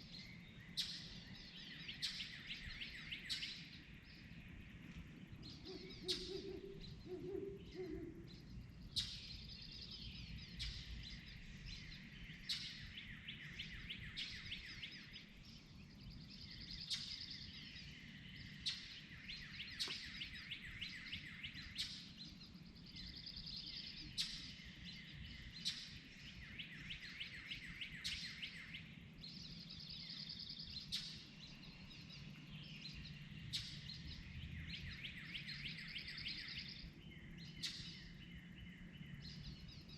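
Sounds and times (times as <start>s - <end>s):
songbirds trilling and chirping: 0.0s - 39.9s
owl hooting: 5.6s - 8.3s.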